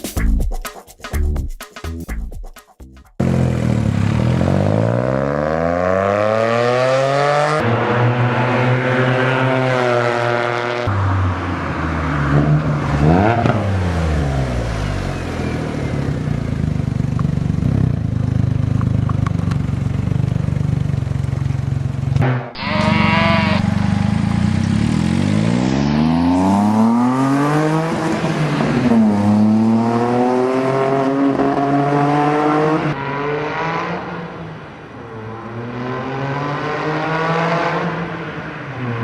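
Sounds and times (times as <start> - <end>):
car engine revving: 3.2 - 16.7, 22.9 - 34.4.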